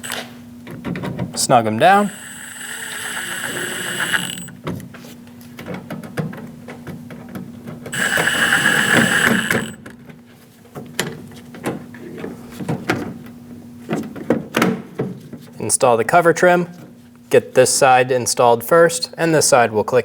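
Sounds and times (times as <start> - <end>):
power driver motor whining: 0.0 - 0.4, 1.4 - 4.6, 8.0 - 9.8
quick irregular clicking: 8.0 - 9.8.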